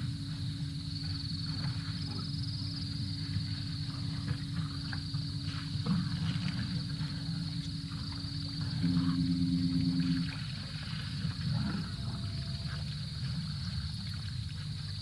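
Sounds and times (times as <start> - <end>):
insect trill: 0.0 - 15.0
low rumbling noise: 5.8 - 14.1
elephants rumbling: 8.6 - 13.8.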